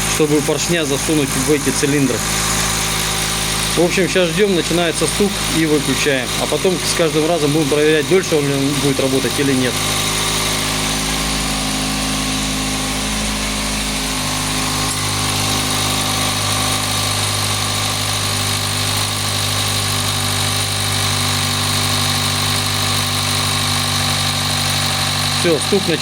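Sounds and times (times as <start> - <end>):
car engine idling: 0.0 - 17.4.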